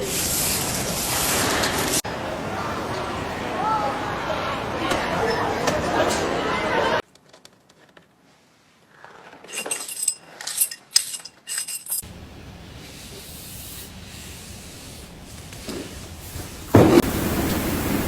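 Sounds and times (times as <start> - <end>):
steady hiss: 0.0 - 3.4, 12.0 - 18.0.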